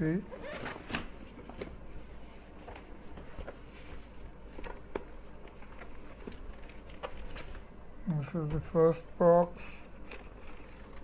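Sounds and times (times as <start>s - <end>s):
packaging clicks and rustles: 4.4s - 7.7s.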